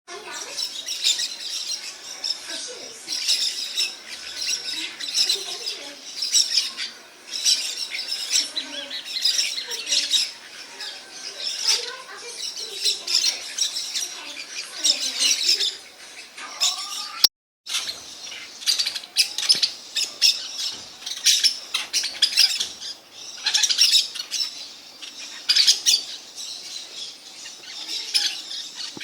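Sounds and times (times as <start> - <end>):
flock of parakeets calling: 0.1 - 29.0.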